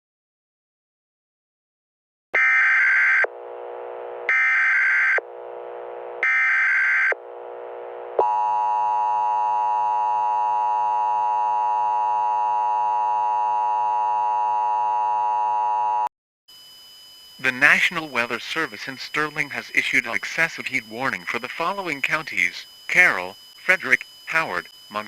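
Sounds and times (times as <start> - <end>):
low buzz: 3.2 - 4.4, 5.2 - 6.2, 7.1 - 16.0
shrill data bursts: 16.6 - 25.0
steady two-tone attention signal: 16.6 - 25.0.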